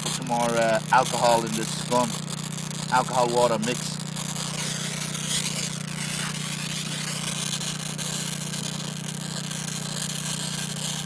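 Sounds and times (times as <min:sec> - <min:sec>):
plasma torch hissing: 0:00.0 - 0:08.7
constant low hum: 0:00.0 - 0:08.8.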